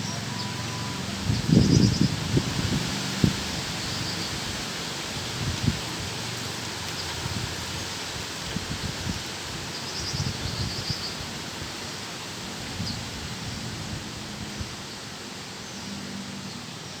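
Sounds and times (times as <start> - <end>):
strong wind blowing: 0.8 - 6.2, 7.1 - 11.4
wind buffeting microphone: 1.2 - 6.2, 7.1 - 11.8.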